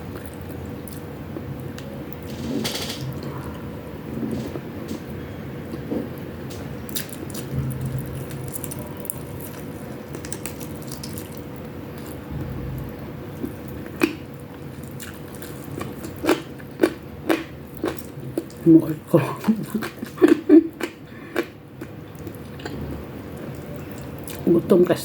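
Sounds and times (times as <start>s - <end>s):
person chewing food: 5.7s - 24.4s.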